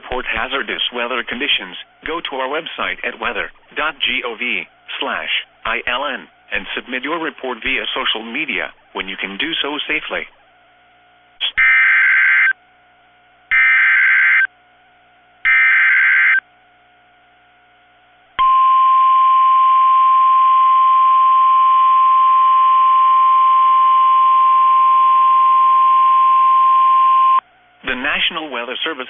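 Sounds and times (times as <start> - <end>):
steady warning alarm tone: 0.0 - 12.8, 13.5 - 14.6, 15.4 - 16.5, 18.4 - 27.5
digital data tone bursts: 13.5 - 14.5.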